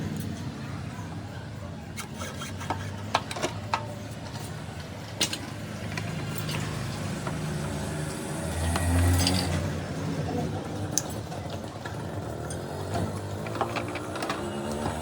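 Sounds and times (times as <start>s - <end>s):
hand tools clicking on metal: 2.0s - 7.6s.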